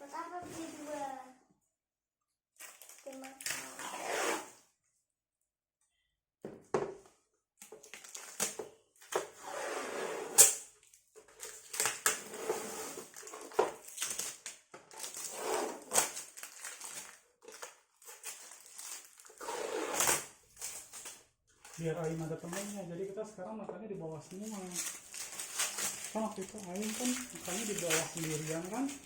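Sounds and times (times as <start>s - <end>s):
packaging crackling and rustling: 2.6s - 3.8s, 7.6s - 8.6s, 13.0s - 19.4s, 20.0s - 22.9s, 24.2s - 29.0s.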